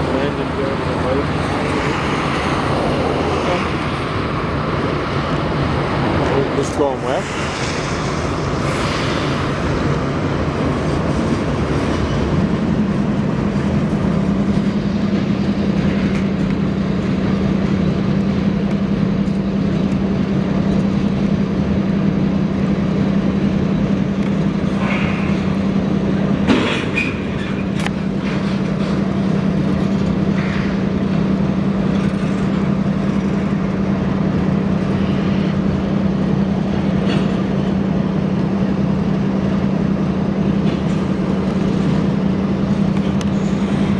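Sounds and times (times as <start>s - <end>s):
train rolling past: 0.0s - 43.9s.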